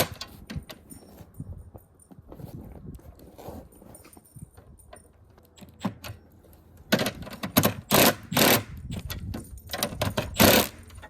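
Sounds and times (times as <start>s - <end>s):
cordless impact driver bursts: 7.9s - 8.8s.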